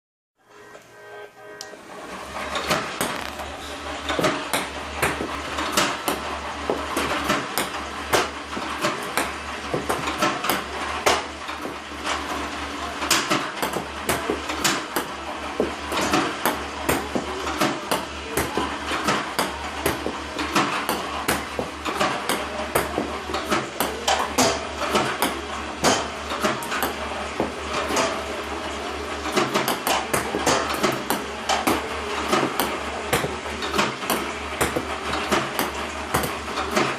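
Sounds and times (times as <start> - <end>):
motor hum: 0.4 - 36.9
ping-pong balls clicking and bouncing: 13.1 - 28.2, 29.4 - 36.9.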